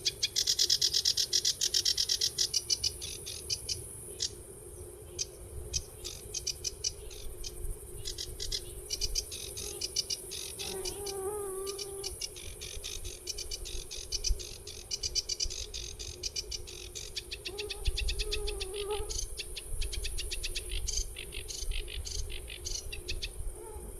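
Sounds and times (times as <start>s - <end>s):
insect hiss: 0.0s - 23.9s.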